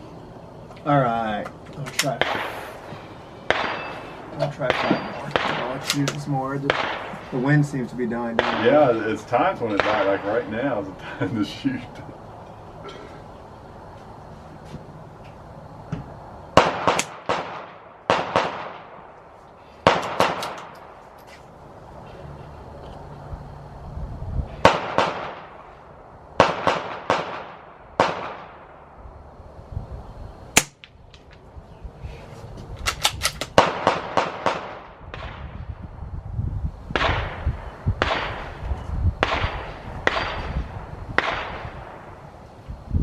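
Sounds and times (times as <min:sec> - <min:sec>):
low wind rumble: 0:00.0 - 0:43.0
gunshots: 0:02.0 - 0:02.9, 0:03.5 - 0:07.5, 0:08.3 - 0:10.6, 0:16.6 - 0:19.1, 0:19.8 - 0:20.7, 0:24.6 - 0:25.6, 0:26.4 - 0:28.8, 0:33.0 - 0:35.6, 0:36.9 - 0:38.6, 0:39.2 - 0:42.1.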